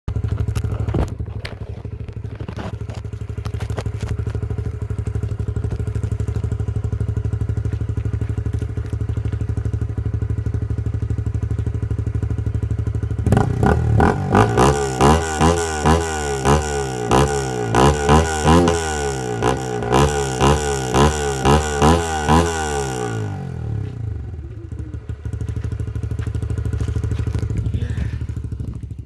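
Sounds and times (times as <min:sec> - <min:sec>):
motorcycle engine idling: 0:00.1 - 0:29.0
engine revving in blips: 0:13.2 - 0:29.0.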